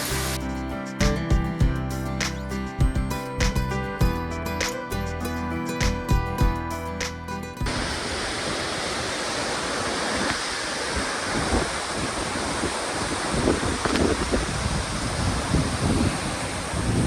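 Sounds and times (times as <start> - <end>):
guitar music: 0.0 - 8.0
wind buffeting microphone: 7.6 - 17.0.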